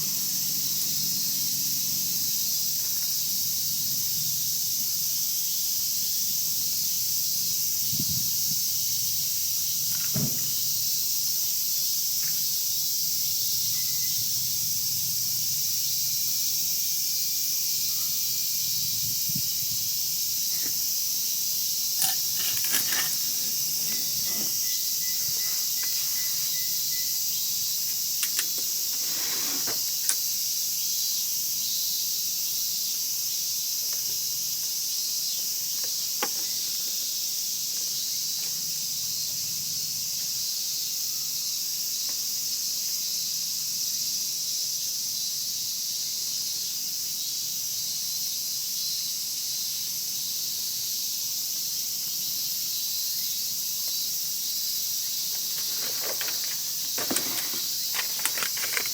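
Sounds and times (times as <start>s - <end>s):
high hiss: 23.0s - 30.7s
wood fire crackling: 55.3s - 58.9s.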